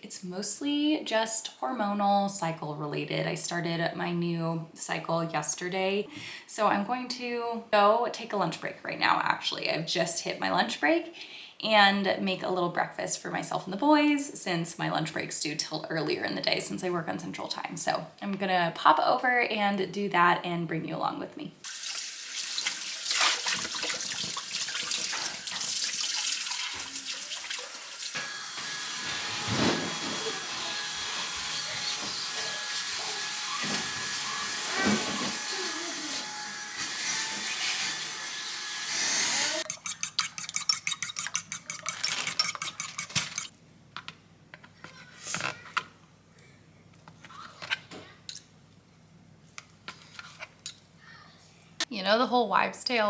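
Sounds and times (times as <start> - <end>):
tap water running into sink: 21.7 - 28.9.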